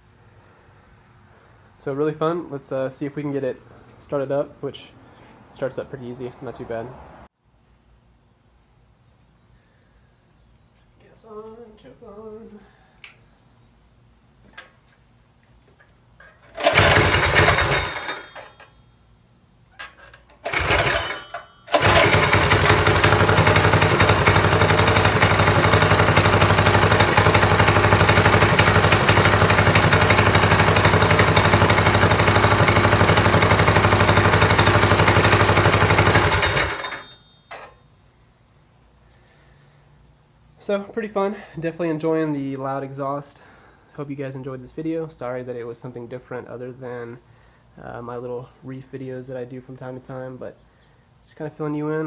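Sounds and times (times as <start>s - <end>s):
engine starting bursts: 16.5s - 18.6s, 20.3s - 37.7s
small engine running with loud exhaust: 16.5s - 18.6s, 20.4s - 37.3s.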